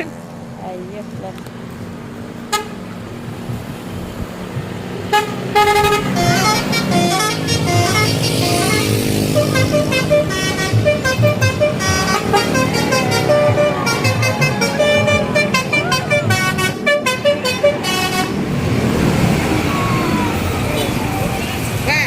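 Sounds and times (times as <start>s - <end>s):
multi-tone horn playing a tune: 5.1s - 18.4s.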